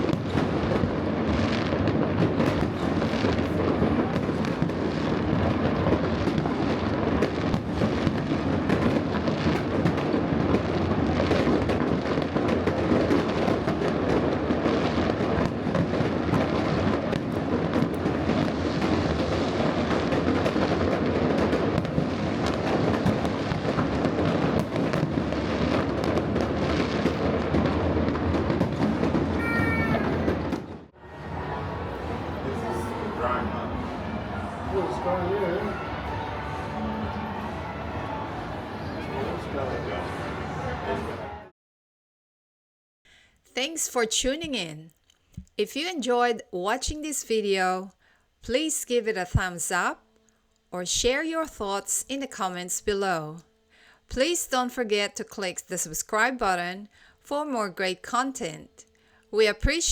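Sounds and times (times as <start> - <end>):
fireworks bangs and crackles: 0.0 - 41.4.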